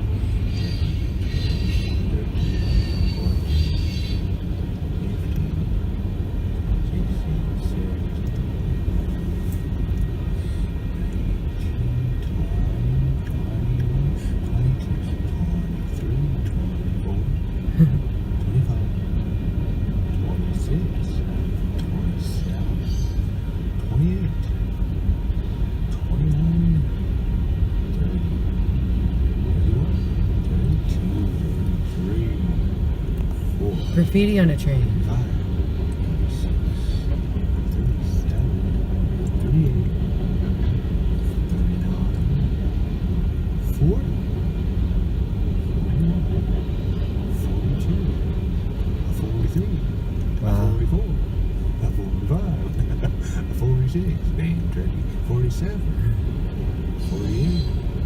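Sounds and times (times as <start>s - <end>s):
freight train rumbling past: 0.0s - 4.7s.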